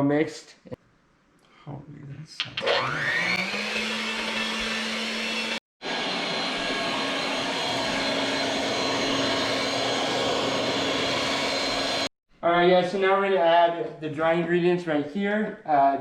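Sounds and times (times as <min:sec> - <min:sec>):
electric mixer motor whining: 0:02.6 - 0:12.1.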